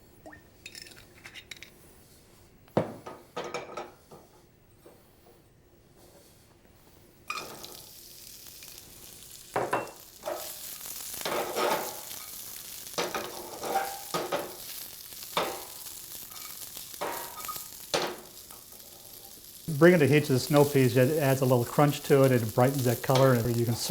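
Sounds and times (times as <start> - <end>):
vegetables sizzling in a pan: 7.3 - 23.9.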